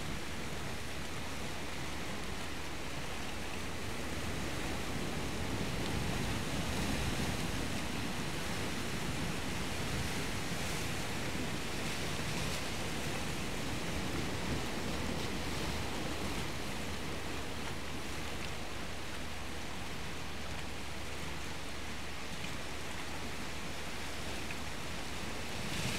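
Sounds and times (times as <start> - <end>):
sea surf rushing: 0.0 - 21.0.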